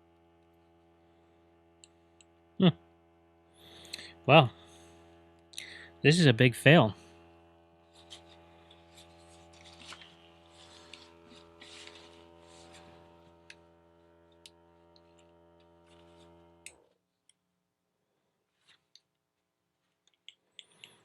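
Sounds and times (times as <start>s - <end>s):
pump motor humming: 0.0s - 16.8s.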